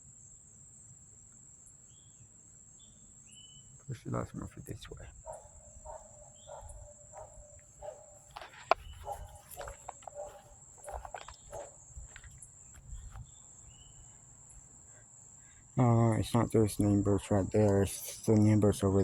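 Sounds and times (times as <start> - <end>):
insects droning: 0.0 - 19.0
distant animal calling: 5.1 - 16.2.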